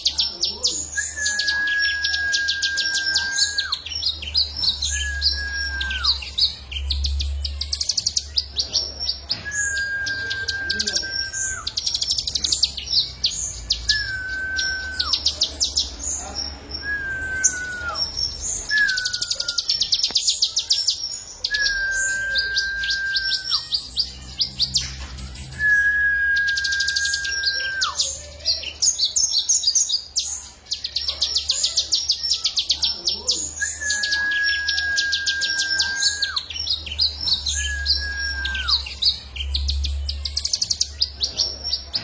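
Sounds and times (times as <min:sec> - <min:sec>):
long level bird whistles: 0:00.9 - 0:07.0, 0:09.3 - 0:12.4, 0:13.6 - 0:15.8, 0:16.8 - 0:23.9, 0:25.5 - 0:28.2, 0:33.5 - 0:40.6.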